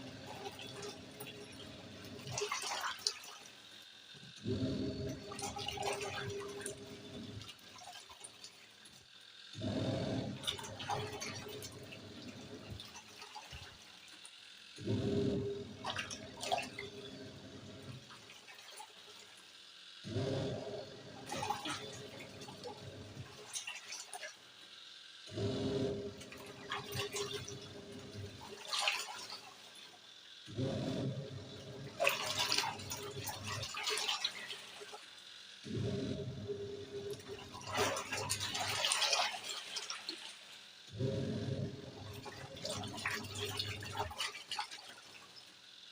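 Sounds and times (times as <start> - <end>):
water sloshing in washing machine: 0.0 - 45.9.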